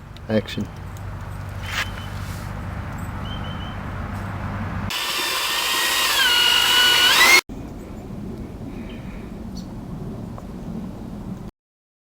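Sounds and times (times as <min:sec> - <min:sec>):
power tool whining: 0:04.9 - 0:07.4.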